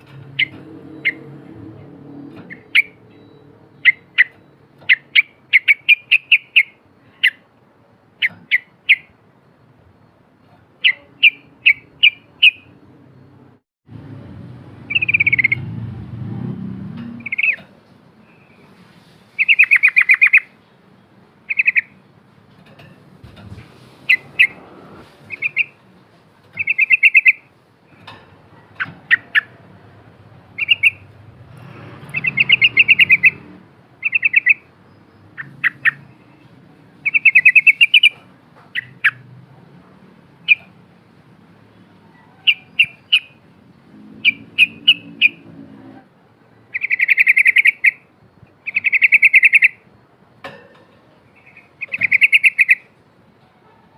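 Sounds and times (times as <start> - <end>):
bird singing trilled phrases: 2.4 - 7.4, 10.8 - 13.3, 14.9 - 15.7, 17.2 - 18.7, 19.4 - 20.6, 21.5 - 22.1, 25.3 - 25.8, 26.6 - 28.1, 30.6 - 31.1, 32.1 - 39.2, 42.4 - 43.4, 44.2 - 45.4, 46.7 - 50.0, 51.3 - 52.9.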